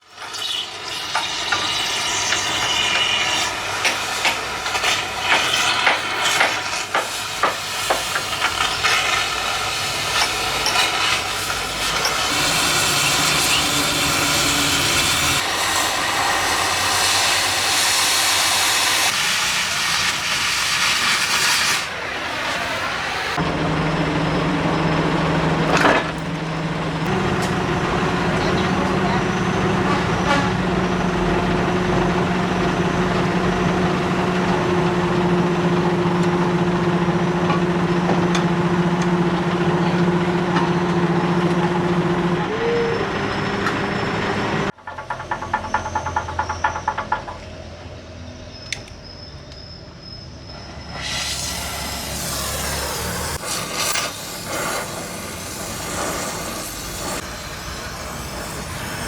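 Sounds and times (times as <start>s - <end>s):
gas flame hissing: 1.2s - 23.4s, 50.6s - 59.0s.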